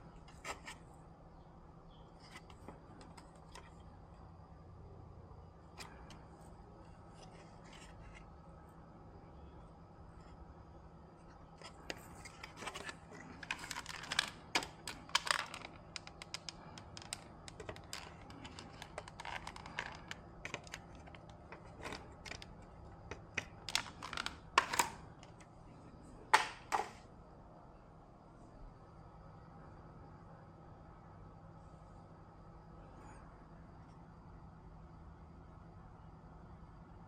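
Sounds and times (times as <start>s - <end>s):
faint steady hum: 0.0s - 37.0s
small hard objects clicking: 13.4s - 25.3s.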